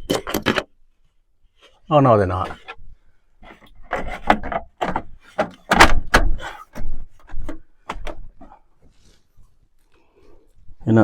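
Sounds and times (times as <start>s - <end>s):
wooden knocks and clunks: 0.0s - 0.8s, 2.3s - 9.0s.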